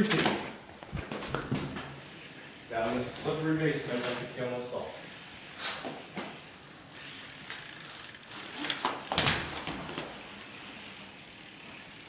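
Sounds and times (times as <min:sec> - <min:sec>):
bike rolling on hard floor: 0:00.0 - 0:12.0
bike hub ticking: 0:04.8 - 0:12.0.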